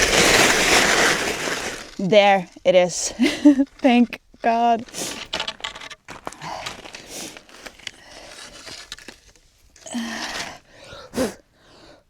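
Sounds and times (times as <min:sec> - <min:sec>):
crunching and rustling: 0:00.0 - 0:11.0
heavy breathing: 0:09.8 - 0:12.0
voiced sighs: 0:09.8 - 0:12.0.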